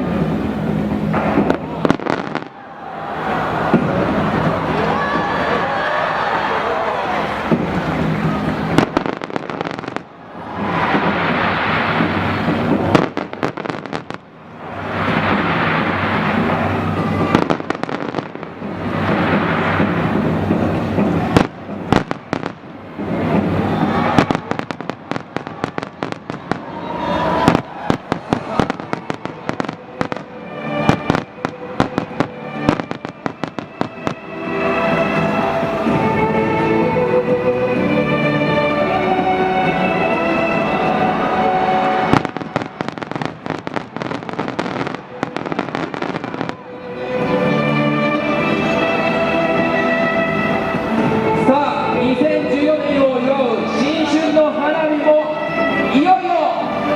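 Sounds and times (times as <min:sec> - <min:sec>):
fireworks crackling pops: 0:00.0 - 0:05.5, 0:07.2 - 0:36.3, 0:41.8 - 0:47.4
aerial fireworks rushing: 0:00.0 - 0:36.2, 0:40.6 - 0:47.2
music: 0:00.0 - 0:56.9.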